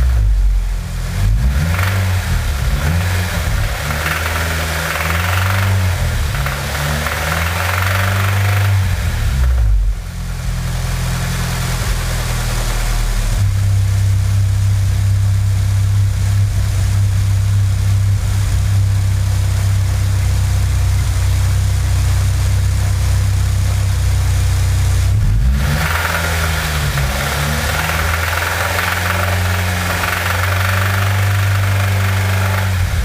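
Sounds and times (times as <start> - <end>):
abnormal engine noise: 0.0 - 33.0
car engine running: 0.0 - 33.0.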